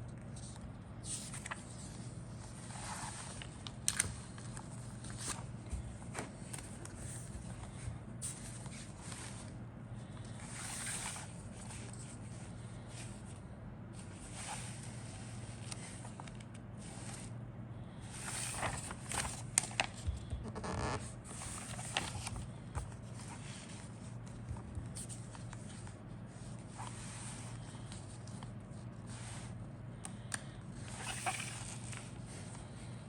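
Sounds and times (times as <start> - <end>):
steady low hum: 0.0 - 33.0
packaging rustling and crinkling: 18.2 - 23.4.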